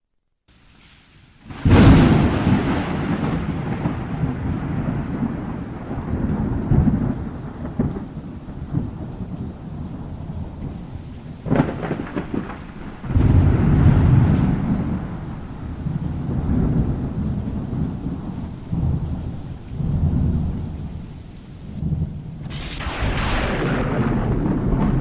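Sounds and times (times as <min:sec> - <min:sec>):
steady rain: 0:00.5 - 0:25.0
sharp thunderclap: 0:01.5 - 0:09.1, 0:11.5 - 0:18.0, 0:22.4 - 0:25.0
thunder rumbling: 0:01.5 - 0:10.6, 0:11.4 - 0:20.9, 0:21.8 - 0:25.0.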